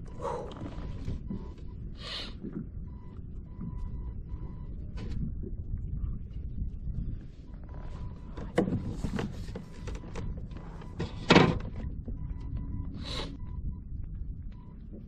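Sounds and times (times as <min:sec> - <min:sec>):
steady low rumble: 0:00.0 - 0:15.0
scrape on a kayak: 0:08.8 - 0:10.8.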